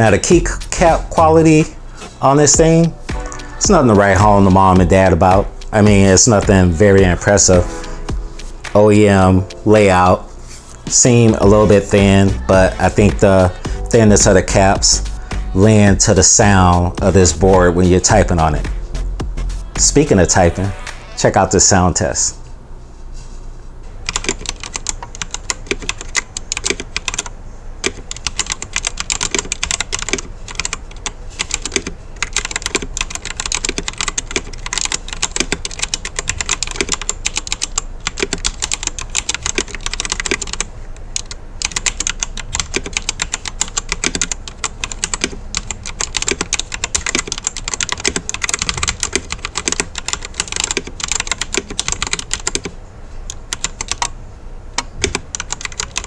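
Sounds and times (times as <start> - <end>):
fast typing on mechanical keyboard: 24.0 - 54.1, 54.8 - 56.0.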